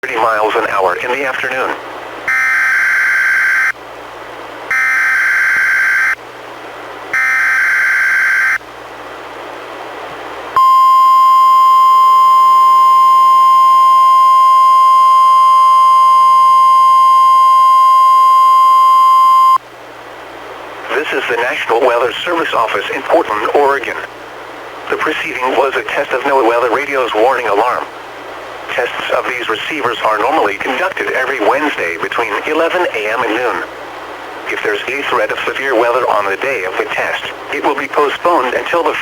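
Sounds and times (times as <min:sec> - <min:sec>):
steady alarm tone: 0:02.3 - 0:03.8, 0:04.7 - 0:06.2, 0:07.1 - 0:08.6, 0:10.6 - 0:19.6.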